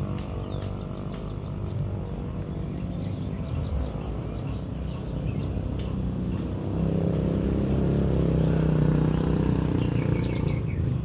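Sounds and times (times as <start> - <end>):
vehicle engine droning: 0.0 - 11.0.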